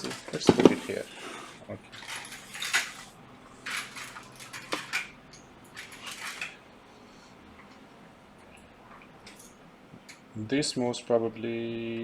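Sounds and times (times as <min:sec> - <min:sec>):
small objects scraping and clinking: 0:00.0 - 0:05.1, 0:05.7 - 0:06.6.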